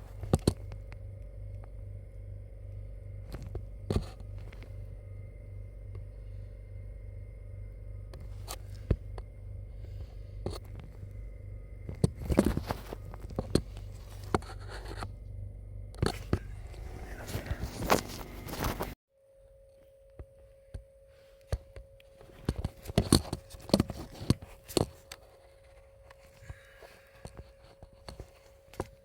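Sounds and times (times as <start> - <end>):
steady low hum: 0.0 - 29.0
clicks knocks and scraping: 22.4 - 26.6.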